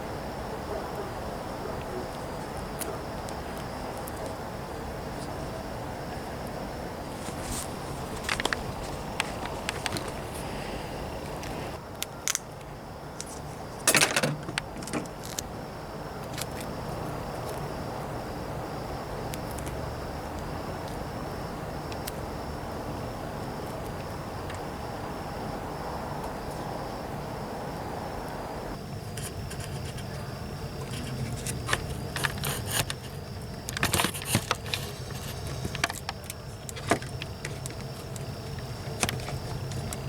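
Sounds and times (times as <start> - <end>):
steady hum: 0.0 - 40.0
clicks and handling noises: 7.1 - 10.4, 11.2 - 15.5, 30.8 - 40.0.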